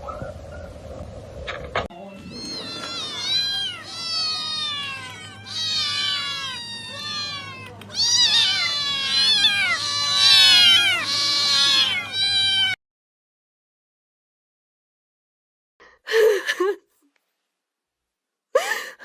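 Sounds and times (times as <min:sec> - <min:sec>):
cat meowing: 0:01.9 - 0:12.8.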